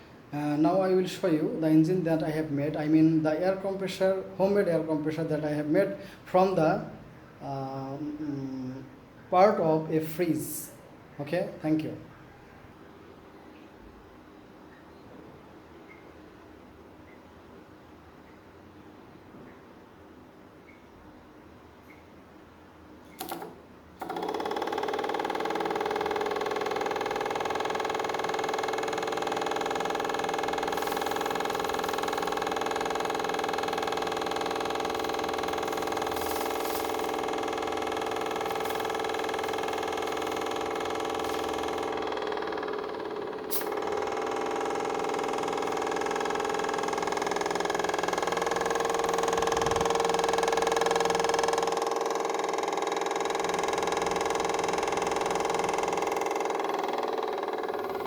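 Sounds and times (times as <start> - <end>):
air compressor humming: 0.0 - 10.8, 23.1 - 58.0.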